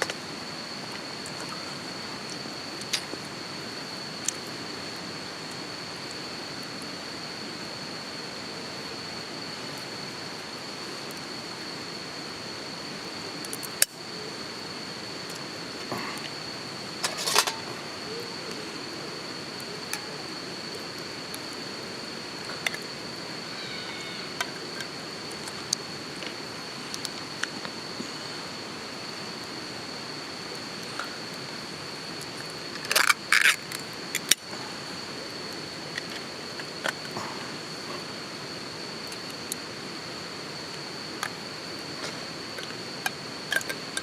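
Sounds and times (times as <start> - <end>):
constant hiss: 0.0 - 44.0
insects singing high note: 16.4 - 29.2.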